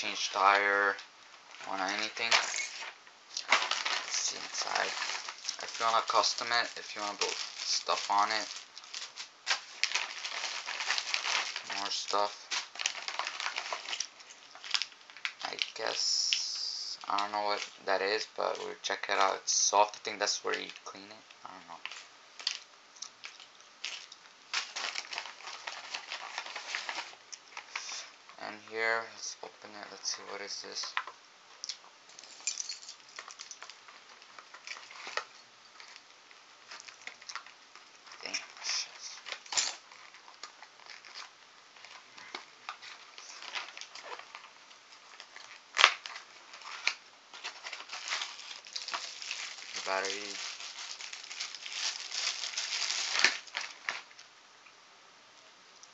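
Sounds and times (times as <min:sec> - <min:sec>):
packaging crinkling and rustling: 0:00.0 - 0:21.0, 0:21.8 - 0:28.4, 0:32.1 - 0:54.3.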